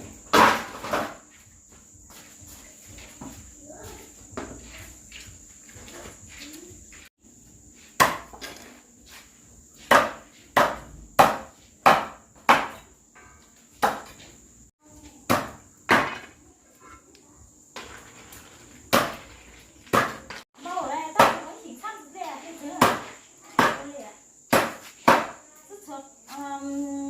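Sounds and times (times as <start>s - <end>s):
high insect buzz: 0.0s - 27.0s
blade chopping wood: 8.0s - 8.4s, 19.9s - 20.4s, 24.5s - 25.4s.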